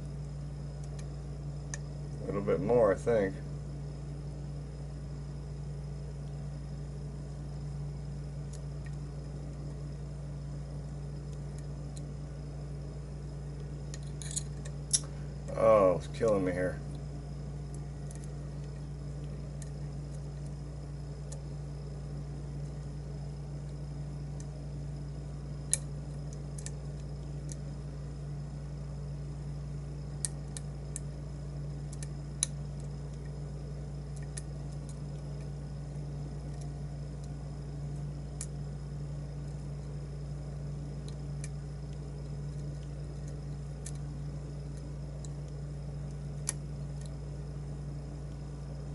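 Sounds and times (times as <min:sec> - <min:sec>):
low hum and hiss: 0:00.0 - 0:48.9
lock picks ticking: 0:13.8 - 0:15.1.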